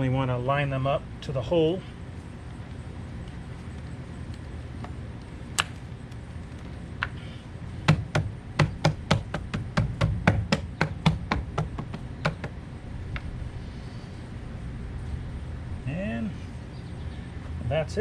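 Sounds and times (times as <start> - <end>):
knocking on plastic wheel cover: 7.9 - 12.6.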